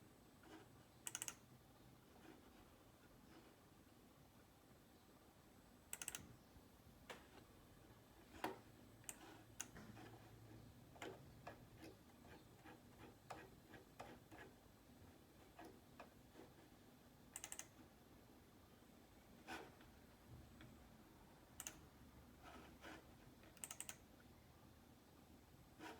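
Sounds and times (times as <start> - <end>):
faint irregular clicks and taps: 0.4 - 1.5, 5.9 - 6.4, 7.0 - 7.5, 8.2 - 18.0, 19.5 - 20.8, 21.5 - 24.3.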